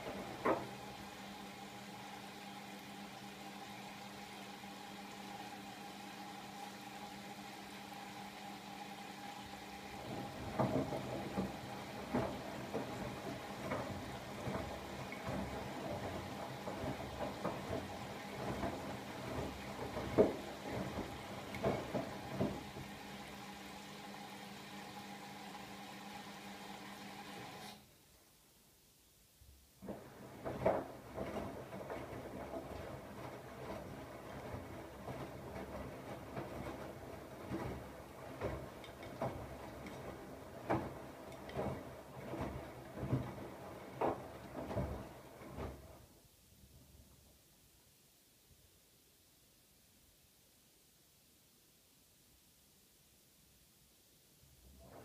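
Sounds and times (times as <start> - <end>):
laundry thumping and splashing in drum: 0.0 - 1.2, 9.5 - 23.8, 29.8 - 46.1
washing machine motor hum: 0.0 - 27.8, 29.8 - 46.2.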